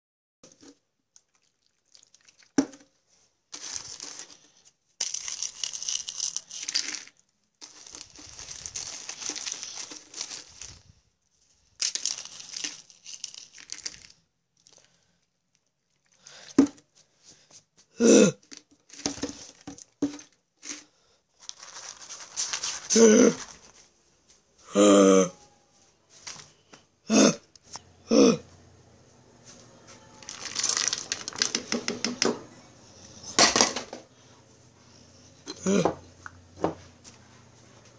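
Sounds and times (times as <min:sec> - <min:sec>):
wrapper crinkling: 0:00.6 - 0:02.8, 0:03.5 - 0:16.7, 0:18.4 - 0:23.9, 0:30.1 - 0:32.0.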